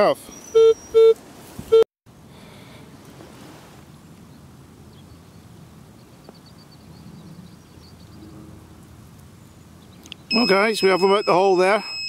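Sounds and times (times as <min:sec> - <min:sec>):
faint high bird chirps: 0:00.2 - 0:01.1, 0:09.6 - 0:12.0.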